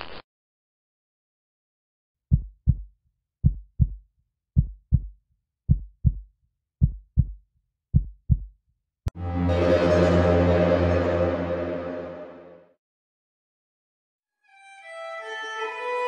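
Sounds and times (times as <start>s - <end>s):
heartbeat thumps: 2.3s - 4.0s, 4.6s - 5.1s, 5.7s - 6.2s, 6.8s - 7.4s, 8.0s - 8.5s.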